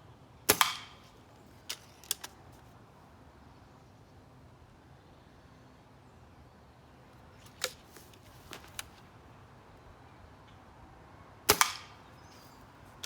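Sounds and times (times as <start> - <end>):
air rifle shot crack: 0.5 - 1.1, 11.5 - 12.1
clicks from handling rifle: 1.6 - 2.7, 7.4 - 9.0.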